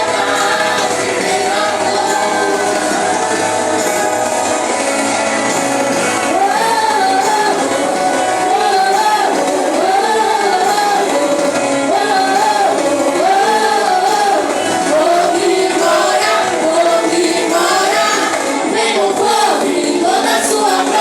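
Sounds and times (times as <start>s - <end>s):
person singing: 6.2s - 21.0s.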